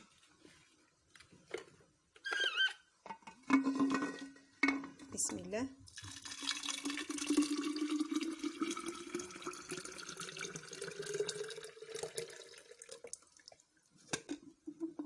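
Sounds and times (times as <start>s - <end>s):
juice pouring into a container: 5.9s - 13.8s.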